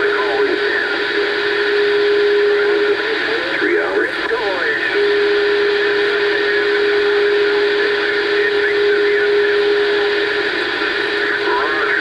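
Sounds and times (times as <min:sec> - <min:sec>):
radio static hiss: 0:00.0 - 0:12.0
low radio whistle: 0:00.6 - 0:03.1, 0:04.9 - 0:12.0.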